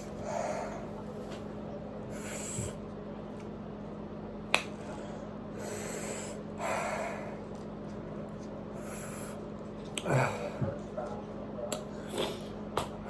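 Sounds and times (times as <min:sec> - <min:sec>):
person sniffing and breathing hard: 0:02.1 - 0:02.8, 0:05.6 - 0:07.4, 0:08.8 - 0:09.4.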